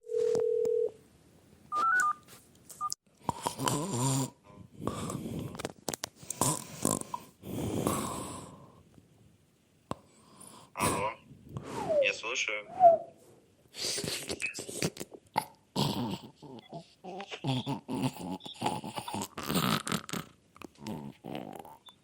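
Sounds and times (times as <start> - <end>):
steady telephone tone: 0.0 - 1.0.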